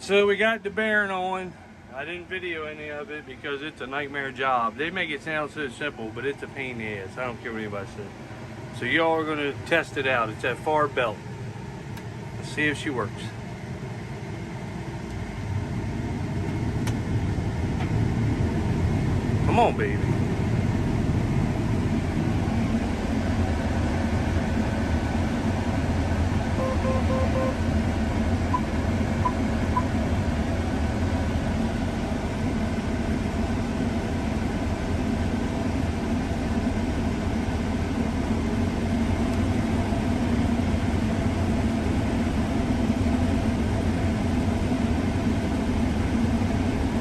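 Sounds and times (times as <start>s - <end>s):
combine harvester drone: 0.0s - 47.0s
short electronic beeps: 26.6s - 27.6s, 28.5s - 29.9s.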